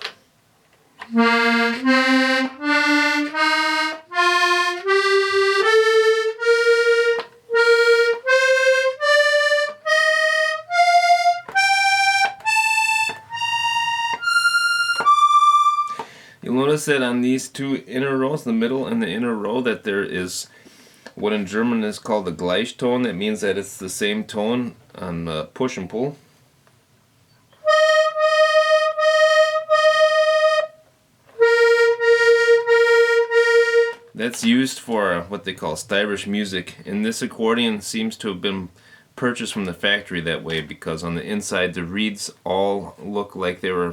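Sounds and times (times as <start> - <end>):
accordion single notes: 1.0 - 16.2, 27.6 - 34.6.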